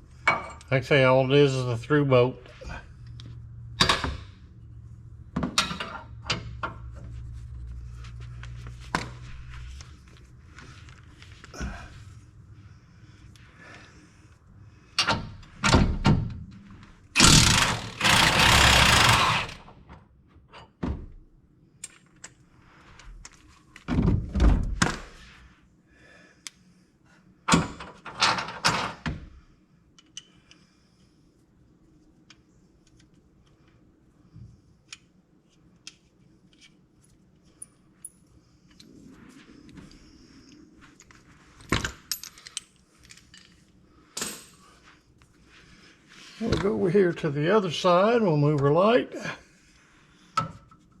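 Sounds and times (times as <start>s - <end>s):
metal rattling and scraping: 17.2s - 19.8s.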